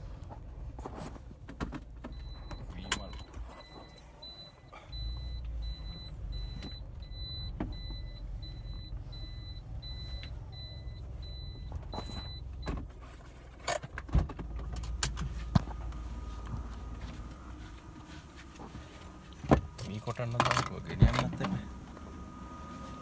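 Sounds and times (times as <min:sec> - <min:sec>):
vehicle engine rumble: 0:00.0 - 0:23.0.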